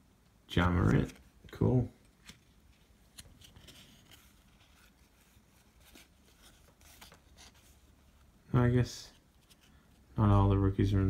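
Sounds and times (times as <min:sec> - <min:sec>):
trading cards rustling: 0:00.6 - 0:10.2.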